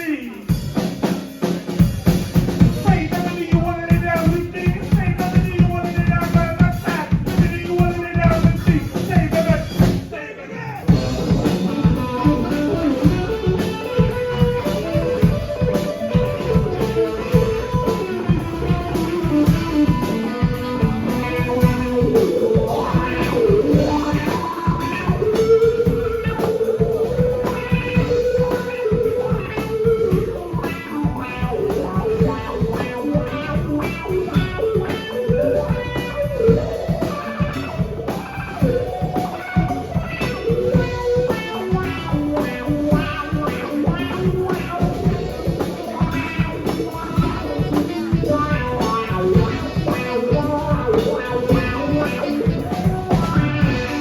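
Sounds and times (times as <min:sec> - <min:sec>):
drums: 0:00.0 - 0:54.0
electric guitar lead notes: 0:10.9 - 0:54.0.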